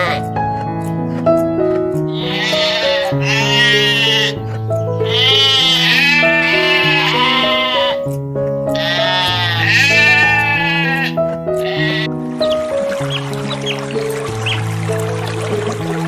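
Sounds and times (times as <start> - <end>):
animal bleating: 0.0 - 0.4, 2.1 - 12.1
background music: 0.0 - 16.0.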